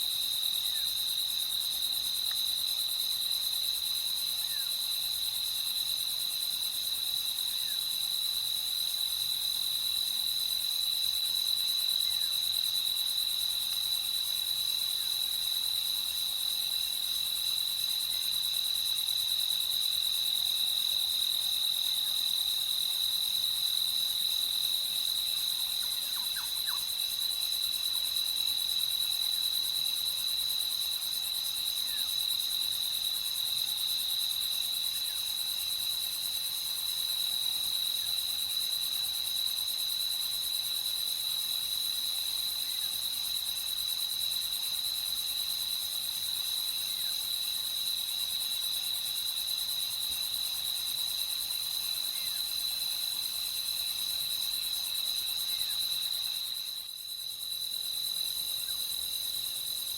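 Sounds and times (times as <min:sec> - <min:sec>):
crickets chirping: 0:00.0 - 0:59.9.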